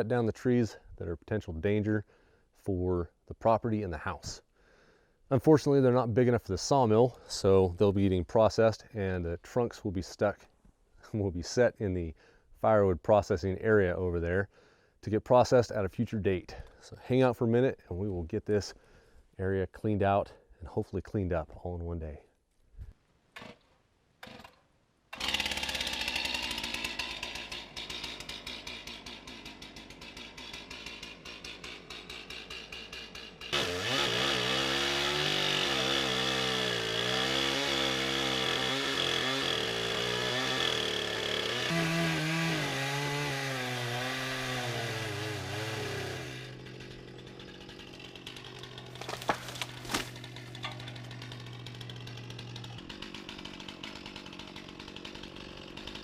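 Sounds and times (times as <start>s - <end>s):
chainsaw cutting wood: 23.3s - 56.0s.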